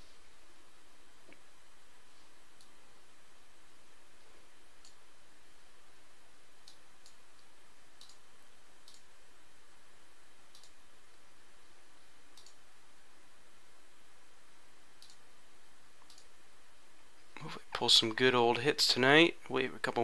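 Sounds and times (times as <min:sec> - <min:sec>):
room noise hiss: 0:00.0 - 0:20.0.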